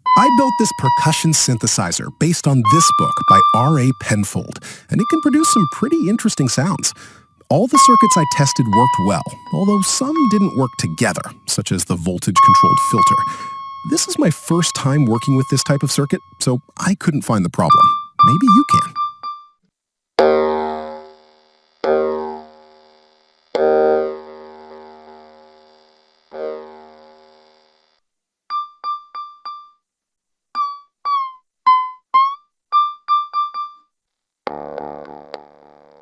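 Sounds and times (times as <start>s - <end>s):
struck synthesizer tones: 0.0s - 1.8s, 2.5s - 4.3s, 4.9s - 11.5s, 12.3s - 16.5s, 17.6s - 19.1s
short synthesizer beeps: 0.0s - 4.3s, 4.9s - 11.4s, 12.3s - 16.5s, 17.6s - 19.4s
buzzy synthesizer tone: 0.0s - 11.7s, 12.3s - 16.7s, 17.6s - 19.2s.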